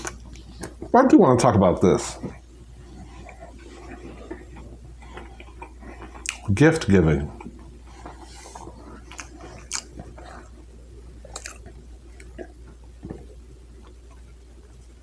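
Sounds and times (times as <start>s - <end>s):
person chewing food: 0.0s - 1.0s, 2.0s - 15.0s
wet mouth clicks and smacks: 5.2s - 6.5s, 9.1s - 10.1s, 11.3s - 12.5s.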